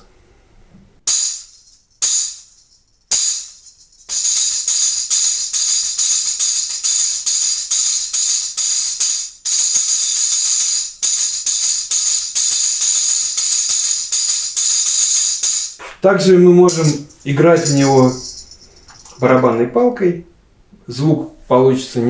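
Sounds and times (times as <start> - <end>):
tambourine jingling strokes: 1.1 - 15.8, 16.7 - 19.6.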